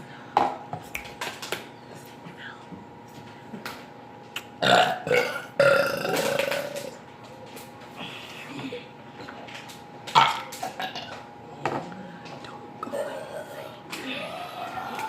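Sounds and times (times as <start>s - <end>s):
people burping: 4.6s - 7.0s, 10.1s - 11.1s, 12.8s - 15.0s.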